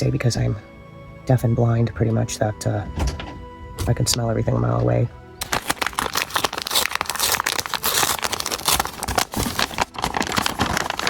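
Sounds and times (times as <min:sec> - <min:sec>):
packaging crinkling: 0:05.4 - 0:11.0.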